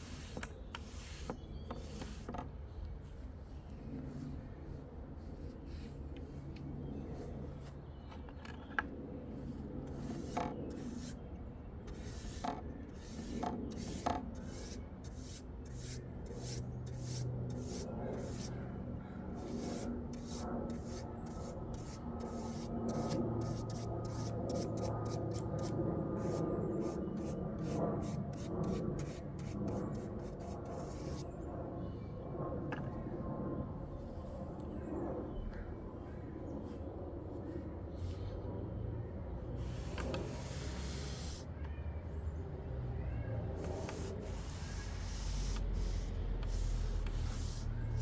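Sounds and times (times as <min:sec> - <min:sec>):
rubbing strokes on wood: 0:00.0 - 0:02.3, 0:11.9 - 0:18.6, 0:19.4 - 0:31.3, 0:39.6 - 0:41.5, 0:43.6 - 0:48.0.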